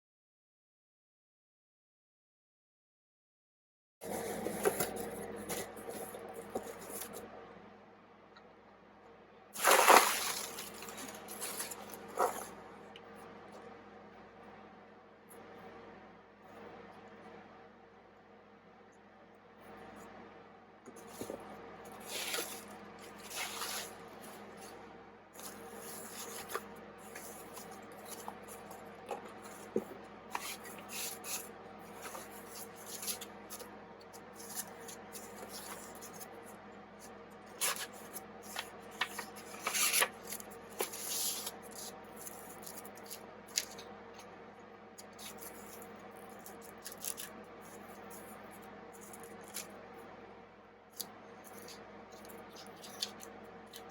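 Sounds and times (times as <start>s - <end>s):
rubbing and scraping objects: 4.0s - 7.3s, 9.6s - 12.7s, 20.9s - 24.8s, 25.4s - 44.3s
faint hum: 4.0s - 53.9s.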